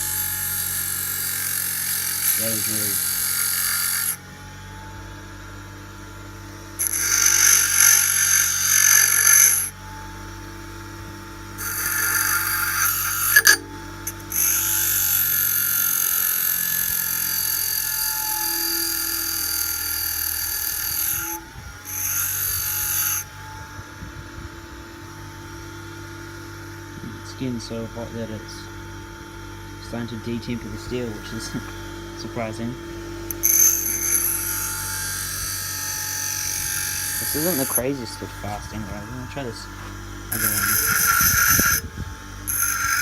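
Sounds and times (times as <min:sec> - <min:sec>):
drill bit grinding on wheel: 0:00.0 - 0:04.3, 0:06.8 - 0:10.1, 0:11.4 - 0:23.6, 0:29.8 - 0:43.0
bench grinder whine: 0:00.0 - 0:43.0.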